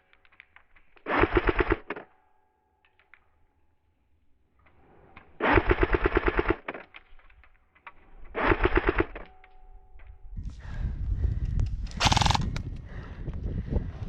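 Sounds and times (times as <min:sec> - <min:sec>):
airsoft rifle full-auto bursts: 0:01.0 - 0:02.0, 0:05.4 - 0:06.8, 0:08.3 - 0:09.2, 0:12.0 - 0:12.6.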